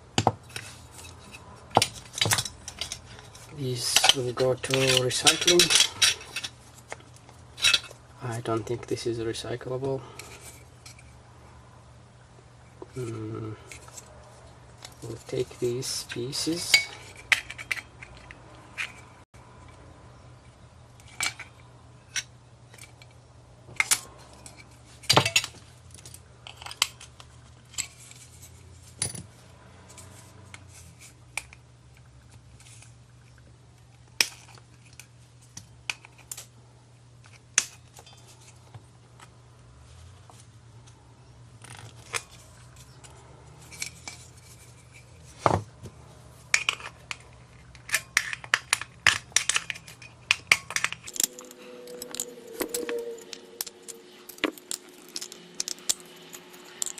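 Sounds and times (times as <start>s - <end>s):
small parts clicking and clinking: 0.2s - 8.4s, 14.8s - 19.8s, 21.0s - 33.4s, 41.6s - 45.4s, 46.4s - 56.9s.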